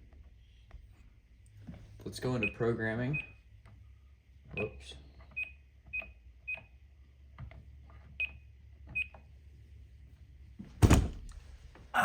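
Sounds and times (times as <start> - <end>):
loud thump: 10.8 - 11.2.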